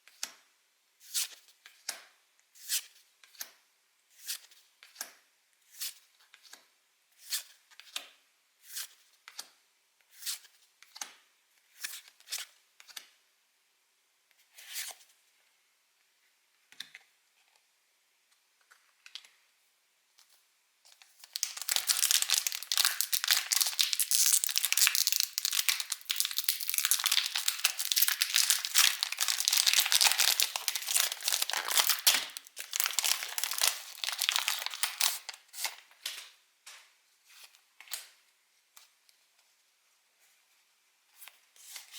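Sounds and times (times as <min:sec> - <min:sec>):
foil wrapper tearing and crinkling: 0:21.2 - 0:35.8.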